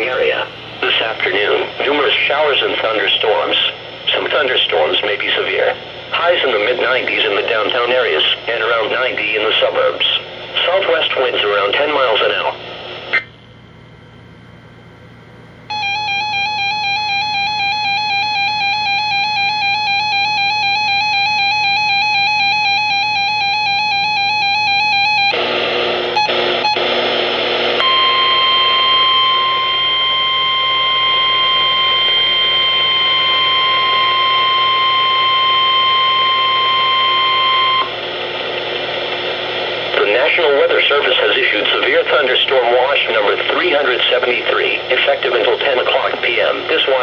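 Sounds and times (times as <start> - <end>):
steady warning alarm tone: 0.0 - 38.2
radio static: 0.0 - 47.0
warbling electronic tone: 15.1 - 25.3.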